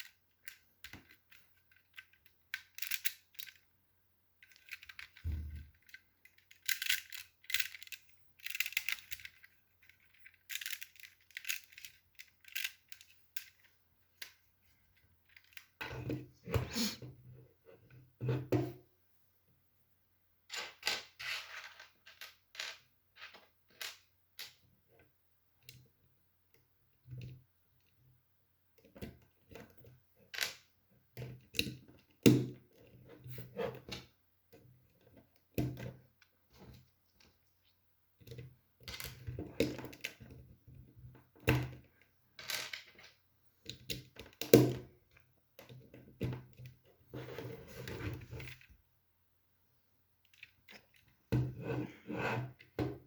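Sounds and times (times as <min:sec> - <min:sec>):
plastic pieces clicking together: 0:00.0 - 0:03.6, 0:04.4 - 0:14.4.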